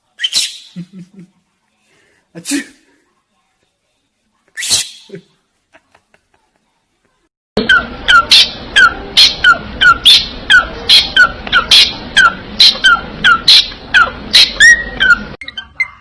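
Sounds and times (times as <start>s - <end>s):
parrot calling: 7.6s - 16.0s.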